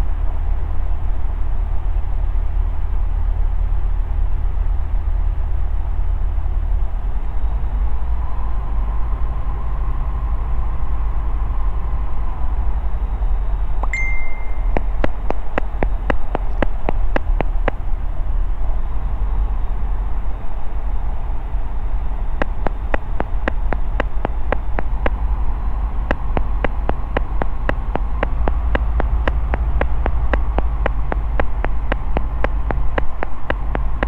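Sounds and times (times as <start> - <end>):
aircraft engine and propeller rumble: 0.0 - 34.0
sharp clicks: 13.8 - 17.8, 22.4 - 25.2, 26.0 - 34.0.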